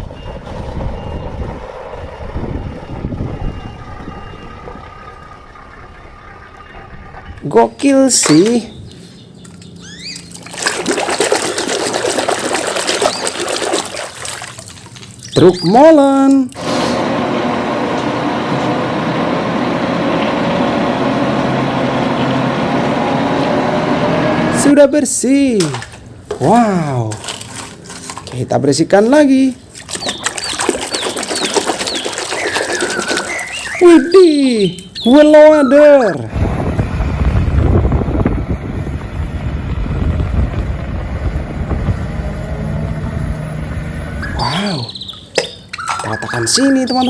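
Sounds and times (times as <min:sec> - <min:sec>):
splashing and scrubbing: 0:09.5 - 0:15.8, 0:25.6 - 0:28.6, 0:29.5 - 0:34.1
running water rushing: 0:10.2 - 0:15.8, 0:29.6 - 0:36.1.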